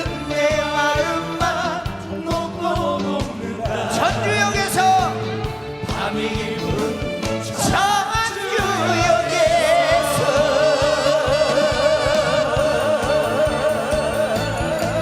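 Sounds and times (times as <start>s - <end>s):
live band playing: 0.0s - 15.0s
person singing with vibrato: 5.8s - 15.0s.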